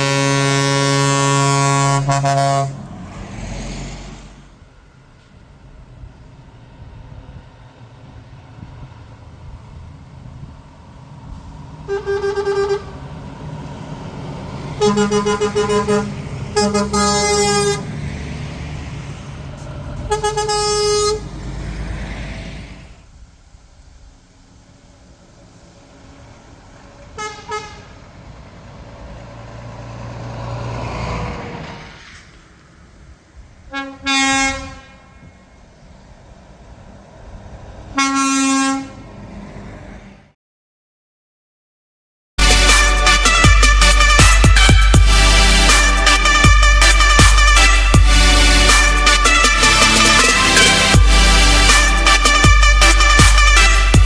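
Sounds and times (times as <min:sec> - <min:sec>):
truck horn blast: 0:00.0 - 0:03.2, 0:11.8 - 0:18.3, 0:20.0 - 0:21.5, 0:27.1 - 0:28.1, 0:33.7 - 0:35.4, 0:38.0 - 0:39.2, 0:42.4 - 0:54.0
truck engine rumbling: 0:00.0 - 0:40.3, 0:42.4 - 0:54.0.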